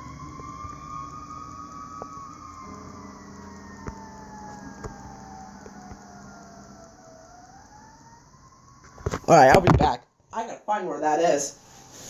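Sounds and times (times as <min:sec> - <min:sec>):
mechanical fire-truck siren winding: 0:00.0 - 0:09.2.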